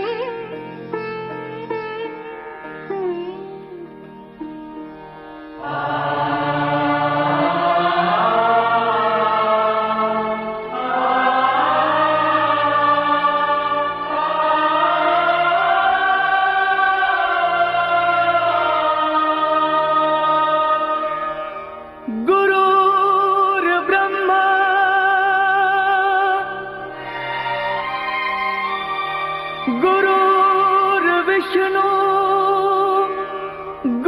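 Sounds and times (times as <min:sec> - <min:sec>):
steady drone: 0:05.4 - 0:22.1
chanted vocal: 0:05.5 - 0:34.0.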